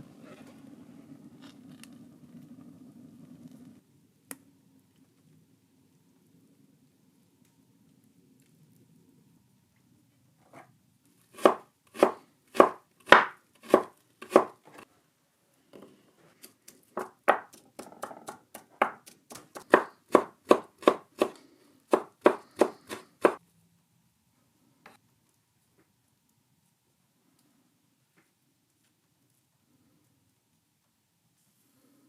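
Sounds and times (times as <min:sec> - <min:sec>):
knife chopping on cutting board: 0:11.4 - 0:14.6, 0:16.9 - 0:23.4.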